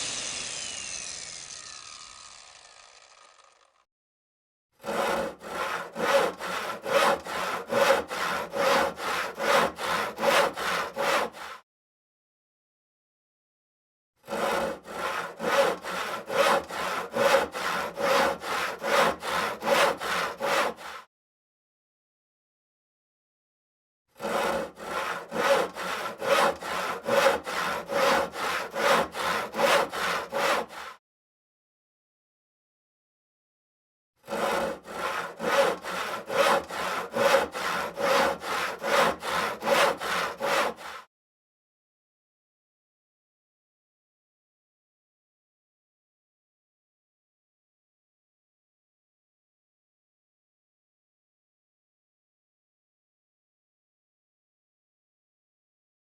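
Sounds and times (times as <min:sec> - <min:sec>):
hand saw cutting wood: 0:00.0 - 0:03.8, 0:04.8 - 0:11.6, 0:14.2 - 0:21.1, 0:24.1 - 0:31.0, 0:34.2 - 0:41.1.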